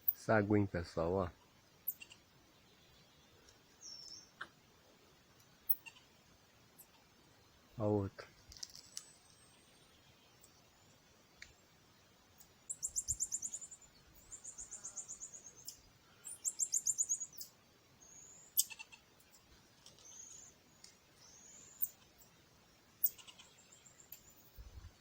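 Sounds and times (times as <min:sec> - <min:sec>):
marmosets trilling: 0:12.7 - 0:19.0, 0:23.0 - 0:23.7.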